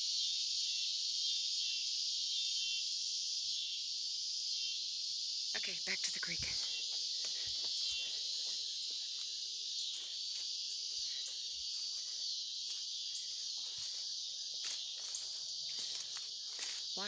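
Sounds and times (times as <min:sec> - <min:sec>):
crickets trilling: 0:00.0 - 0:17.0
faint footsteps: 0:06.5 - 0:17.0.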